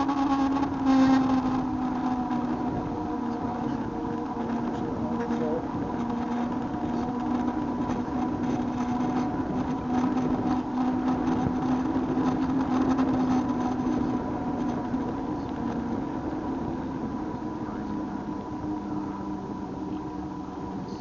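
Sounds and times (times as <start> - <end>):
low rumble: 0.0 - 21.0
steady motor drone: 0.0 - 21.0.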